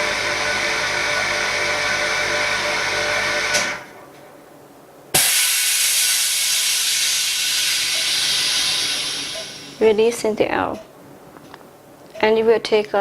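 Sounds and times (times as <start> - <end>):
machine humming and hissing: 0.0 - 4.0, 5.2 - 10.0
loud hiss of air releasing: 5.2 - 9.9.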